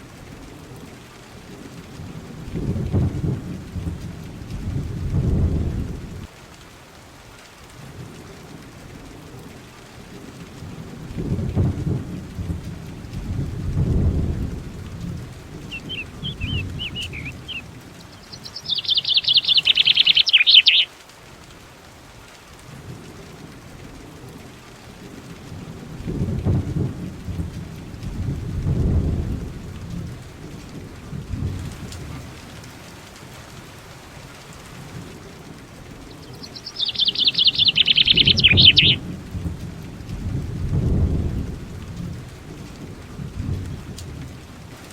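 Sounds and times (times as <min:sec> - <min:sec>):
rain falling: 0:00.0 - 0:44.9
deep rolls of thunder: 0:02.0 - 0:06.3, 0:10.7 - 0:20.8, 0:25.0 - 0:32.6, 0:35.8 - 0:44.8
bird's rapid trill: 0:15.7 - 0:20.9, 0:36.2 - 0:39.0.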